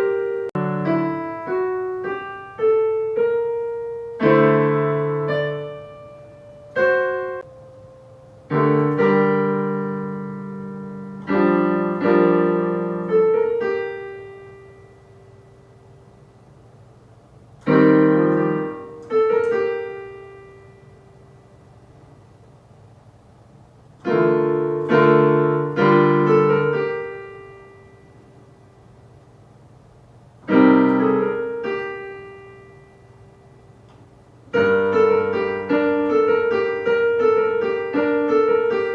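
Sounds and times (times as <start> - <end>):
piano chords played slowly: 0.0 - 22.6, 23.6 - 38.9.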